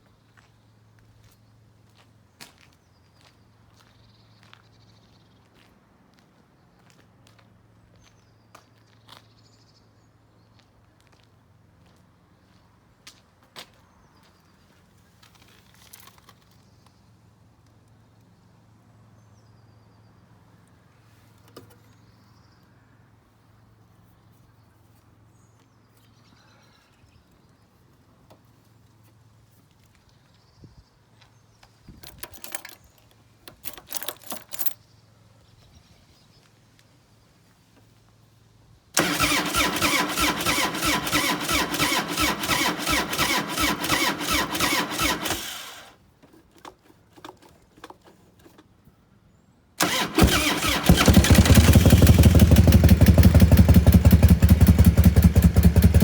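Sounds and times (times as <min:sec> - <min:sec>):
motorcycle starter cranking: 0:32.0 - 0:32.9, 0:39.0 - 0:45.9, 0:49.8 - 0:56.0
motorcycle engine running: 0:49.8 - 0:56.0.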